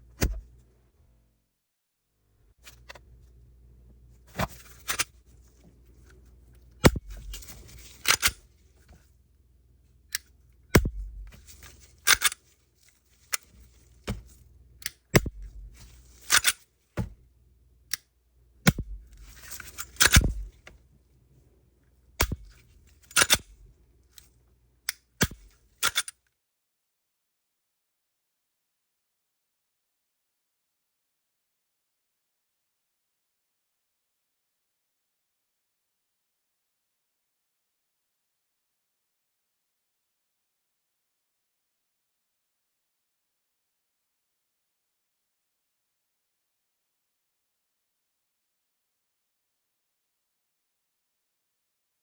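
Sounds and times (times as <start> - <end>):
pistol slide scraping: 4.3 - 6.2, 6.8 - 9.0, 10.1 - 17.1, 18.7 - 20.7, 22.2 - 23.6, 25.2 - 26.1.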